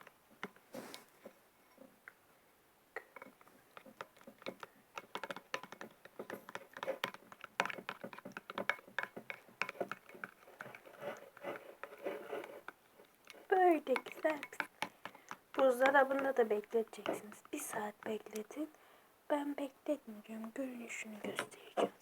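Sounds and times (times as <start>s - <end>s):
slime squelching while stirred: 3.1s - 18.8s.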